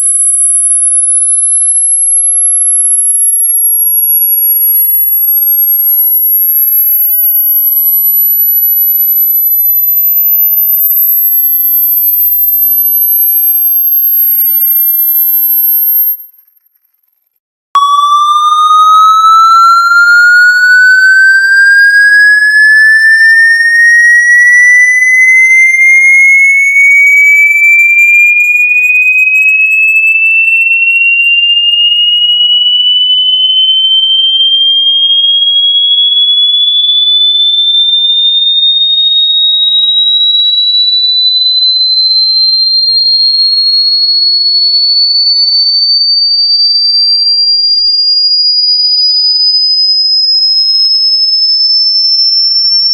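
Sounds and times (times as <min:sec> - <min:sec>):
electronic tone sweeping upward: 0:17.8 - 0:26.1.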